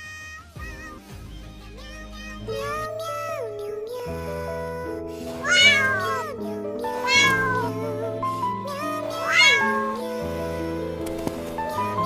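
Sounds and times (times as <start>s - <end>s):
background music: 0.4s - 12.0s
cat meowing: 5.4s - 7.8s, 8.7s - 10.1s.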